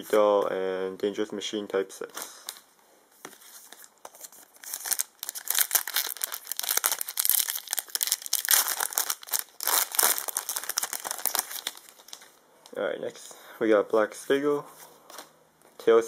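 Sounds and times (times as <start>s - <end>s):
foil wrapper crinkling and tearing: 4.2s - 12.3s.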